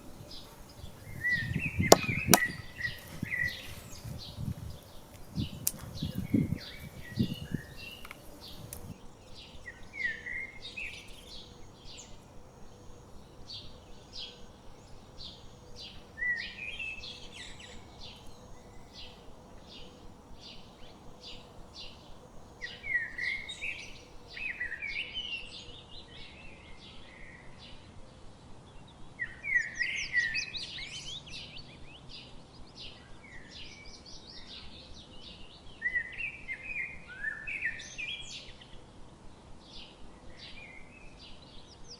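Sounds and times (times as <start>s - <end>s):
songbirds warbling: 0.0s - 24.8s.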